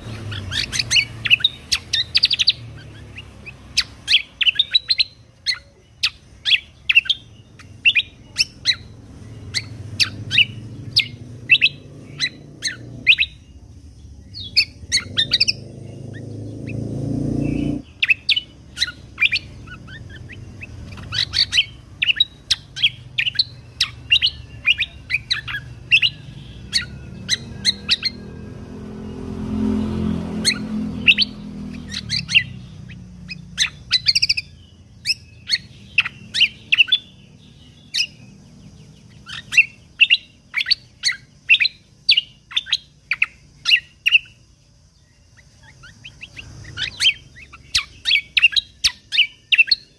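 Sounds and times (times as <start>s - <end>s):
bird singing high sharp notes: 0.0s - 49.9s
low rumbling noise: 8.8s - 33.9s.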